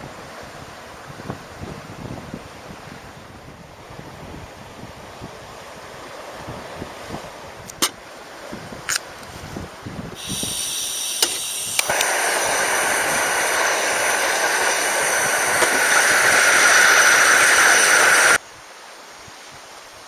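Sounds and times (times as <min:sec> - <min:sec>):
loud steady hiss: 0:10.1 - 0:20.0.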